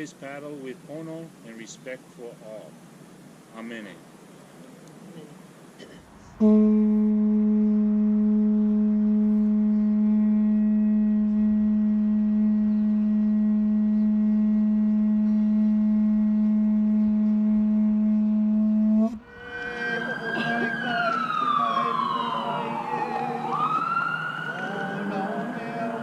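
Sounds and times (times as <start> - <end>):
conch shell trumpet note: 6.3 - 22.2.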